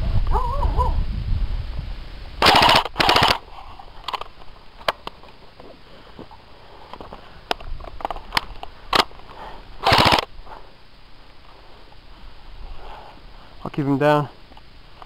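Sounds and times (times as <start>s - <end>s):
airsoft gun automatic bursts: 2.4s - 3.5s, 9.8s - 10.3s.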